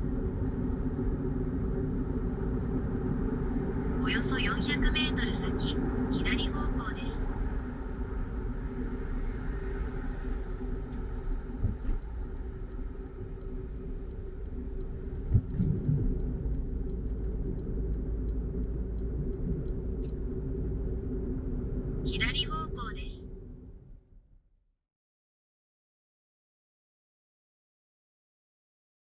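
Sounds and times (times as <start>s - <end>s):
car engine and road rumble: 0.0s - 22.1s.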